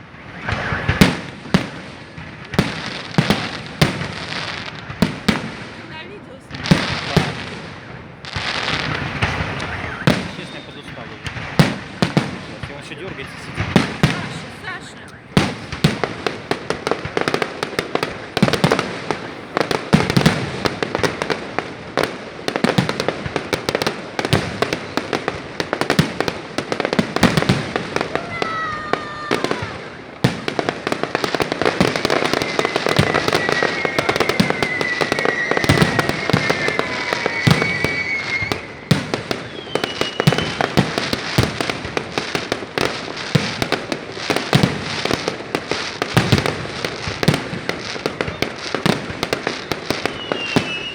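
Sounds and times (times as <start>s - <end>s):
fireworks bangs and crackling: 0.0s - 50.9s
thin whistling tones: 8.8s - 11.1s, 32.4s - 38.7s, 39.4s - 40.6s, 50.1s - 50.9s.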